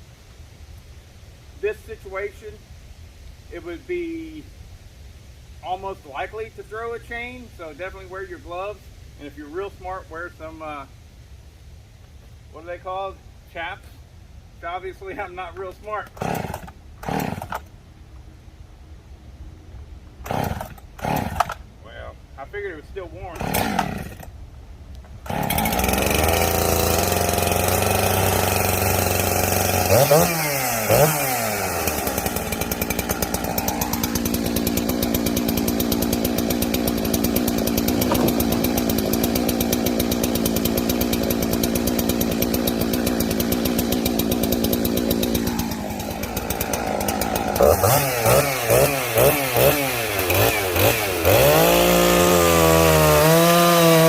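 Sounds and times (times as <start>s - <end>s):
chainsaw revving and cutting logs: 15.7s - 17.7s, 20.2s - 21.6s, 23.2s - 24.4s, 25.2s - 54.0s.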